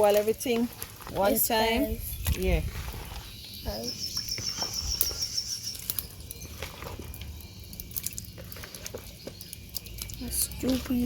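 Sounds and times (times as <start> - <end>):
low outdoor background: 0.0 - 11.0
insect trilling: 3.2 - 11.0.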